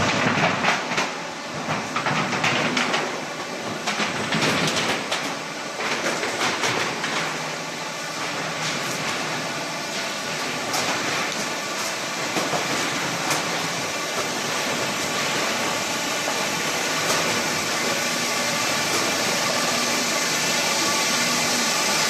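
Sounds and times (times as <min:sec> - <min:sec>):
factory machinery running: 0:00.0 - 0:22.0.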